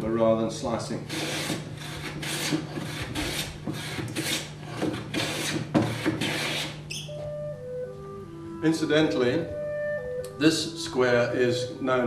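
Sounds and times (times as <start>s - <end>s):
hand plane shaving wood: 1.1s - 6.8s.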